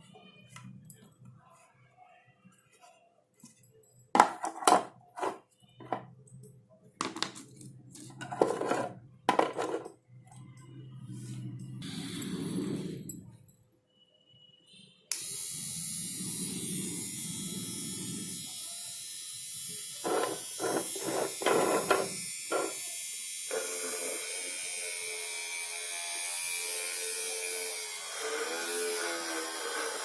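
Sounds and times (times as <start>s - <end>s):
small drill motor buzzing: 15.1s - 30.0s.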